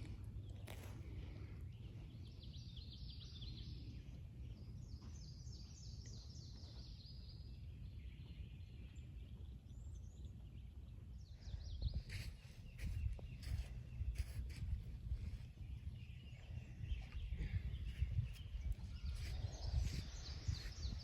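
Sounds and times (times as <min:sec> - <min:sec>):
songbird chirping: 0:00.0 - 0:21.0
steady low rumble: 0:08.6 - 0:21.0.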